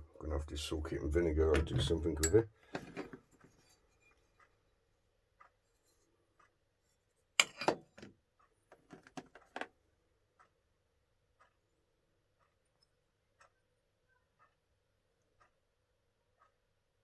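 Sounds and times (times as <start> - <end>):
tools knocking and clinking: 1.5 - 3.2, 7.4 - 8.1.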